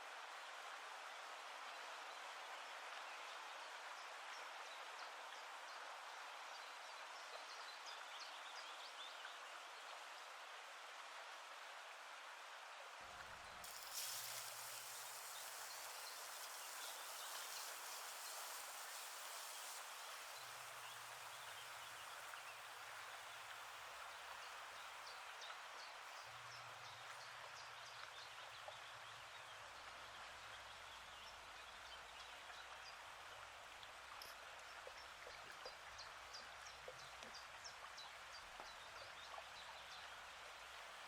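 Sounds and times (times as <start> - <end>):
small crackles: 13.6 - 24.4
food sizzling in a pan: 13.6 - 25.3.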